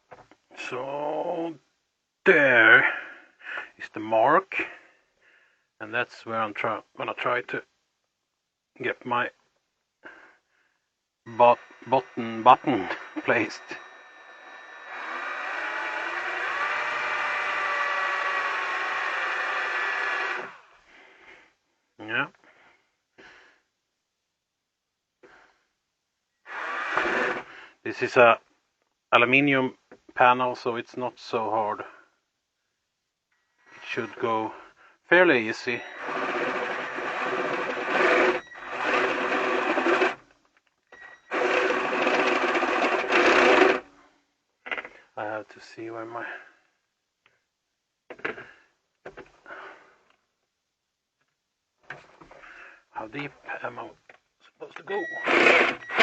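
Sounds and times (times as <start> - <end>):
cordless drill motor whining: 11.3 - 20.8, 26.5 - 27.6, 35.7 - 40.2, 40.9 - 43.9, 54.9 - 56.0.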